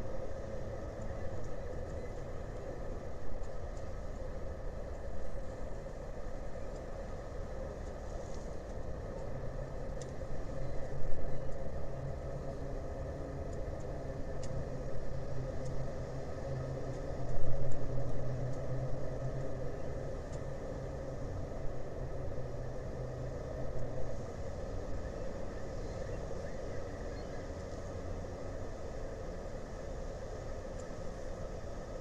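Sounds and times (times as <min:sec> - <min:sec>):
faint light clicks: 0:13.5 - 0:14.6.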